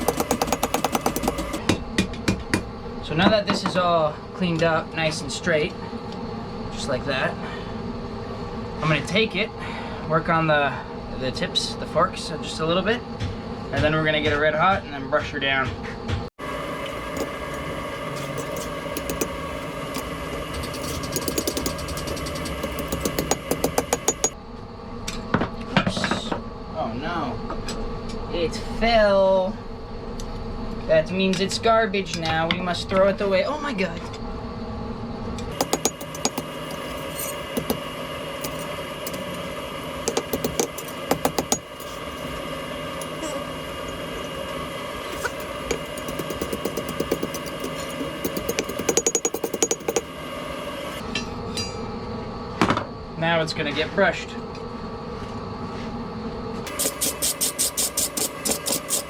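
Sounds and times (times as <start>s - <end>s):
steady machine hum: 0.0s - 15.1s, 15.9s - 25.1s, 33.2s - 59.0s
hammer striking steel: 20.8s - 24.4s, 35.5s - 37.8s, 40.0s - 42.0s, 45.2s - 50.1s.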